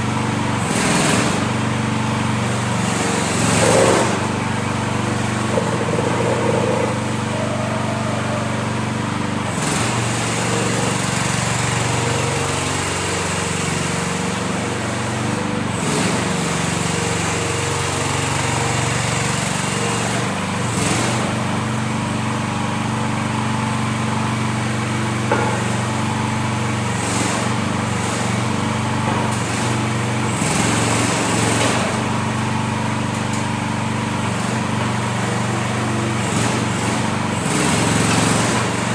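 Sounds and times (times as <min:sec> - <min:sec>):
excavator engine running: 0:00.0 - 0:19.9.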